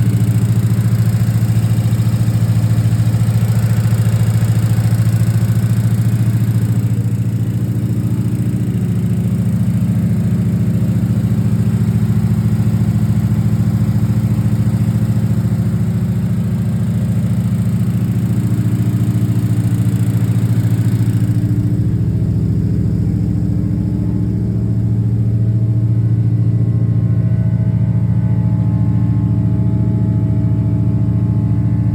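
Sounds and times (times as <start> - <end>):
engine lifter ticking: 0.0 - 23.8
car engine running: 0.0 - 31.9.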